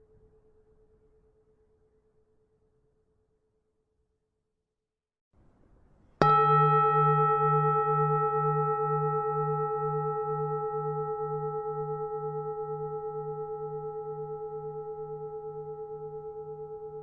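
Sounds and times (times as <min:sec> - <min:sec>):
temple bell ringing: 0:06.2 - 0:17.0.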